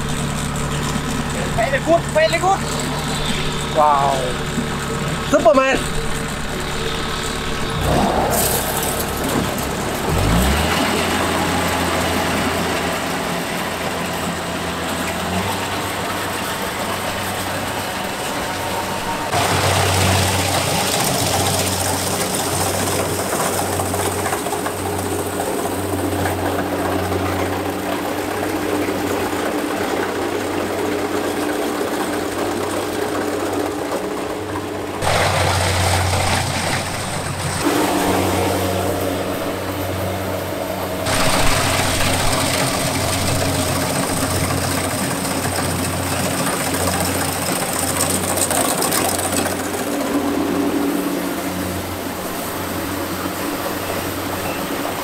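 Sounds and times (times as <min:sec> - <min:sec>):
farm machine engine humming: 0:00.0 - 0:55.0
loud rushing noise: 0:35.0 - 0:45.5.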